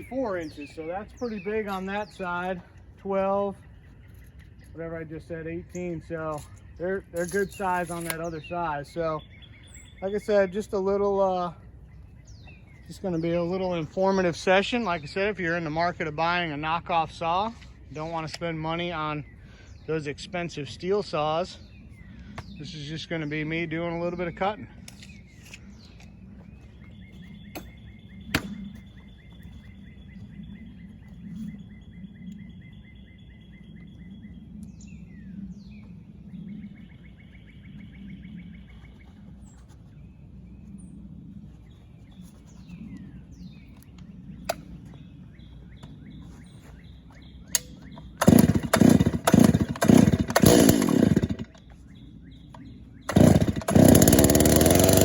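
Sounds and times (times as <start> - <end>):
birds chirping: 0.0 - 55.0
chainsaw starting and running: 48.2 - 51.7, 53.1 - 55.0.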